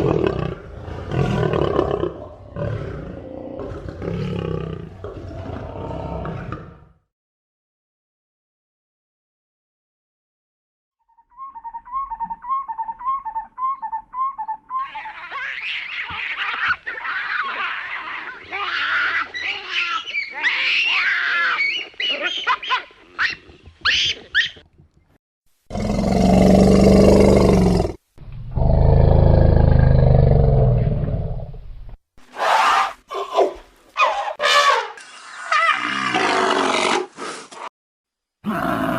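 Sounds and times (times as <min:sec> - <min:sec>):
big cat roaring: 0:00.0 - 0:07.0, 0:25.7 - 0:31.5
high shifting animal cries: 0:14.7 - 0:24.6.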